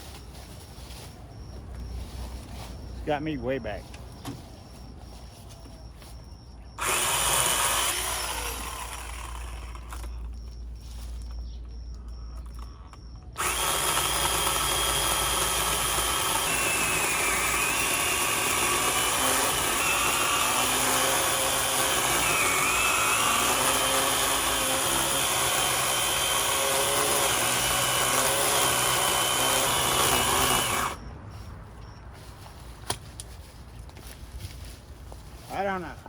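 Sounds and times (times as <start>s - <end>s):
chainsaw cutting wood: 6.8s - 10.1s, 13.4s - 31.0s.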